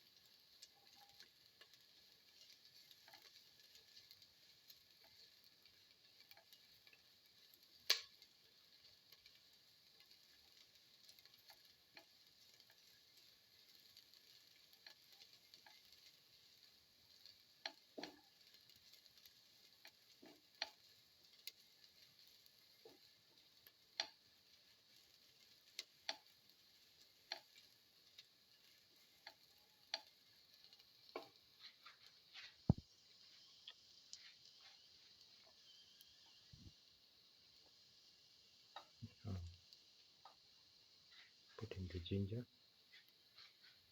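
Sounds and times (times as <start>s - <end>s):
food sizzling in oil: 0.0s - 43.9s
utensil clicking against pan: 0.5s - 32.2s.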